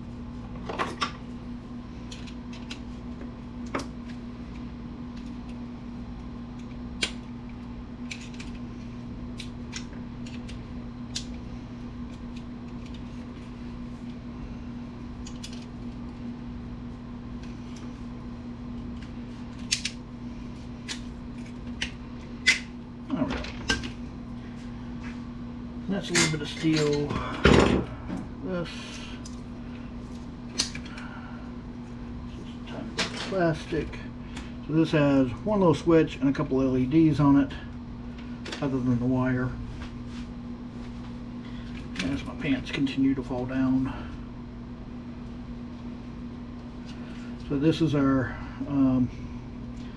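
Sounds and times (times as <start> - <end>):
steady low hum: 0.0 - 49.9.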